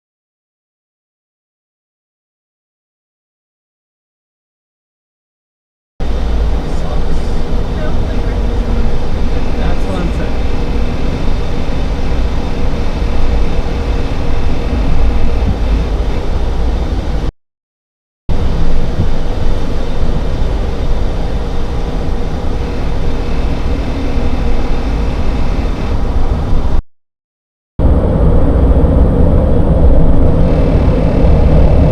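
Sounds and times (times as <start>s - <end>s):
low drone inside vehicle cab: 6.0s - 17.3s, 18.3s - 26.8s, 27.8s - 31.9s.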